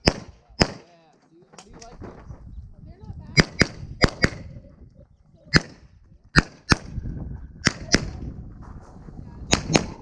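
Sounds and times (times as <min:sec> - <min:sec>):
handgun shots: 0:03.4 - 0:04.4.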